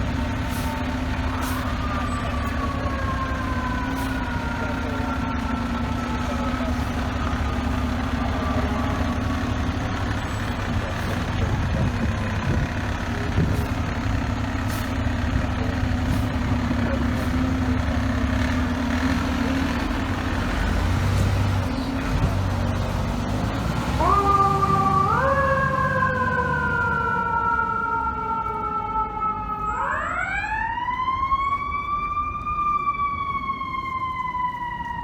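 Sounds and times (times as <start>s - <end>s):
faint siren: 0.0s - 20.8s, 23.6s - 35.0s
truck diesel engine idling: 0.0s - 26.9s
city street noise: 0.0s - 35.0s.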